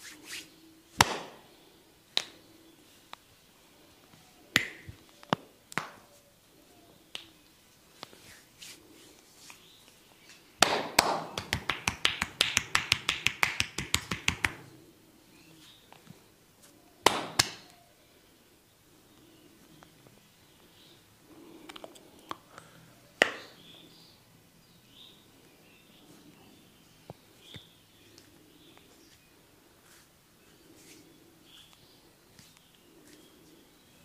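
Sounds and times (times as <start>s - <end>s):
hands slapping a head: 1.0s - 1.4s, 2.1s - 2.4s, 4.6s - 6.1s, 10.6s - 14.7s, 17.0s - 17.8s, 23.2s - 23.6s.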